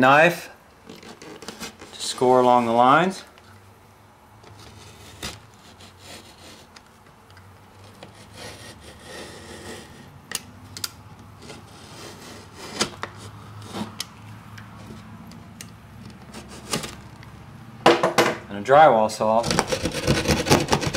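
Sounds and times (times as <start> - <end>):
knife scraping drywall: 4.6 - 6.8, 7.8 - 10.2, 11.4 - 14.1, 16.3 - 17.0, 19.4 - 20.9.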